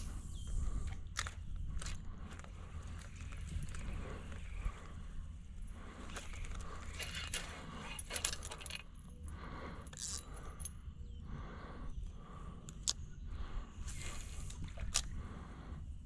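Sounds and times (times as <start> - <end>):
light clicks and rattles: 0.0 - 10.8
steady low rumble: 0.0 - 16.0.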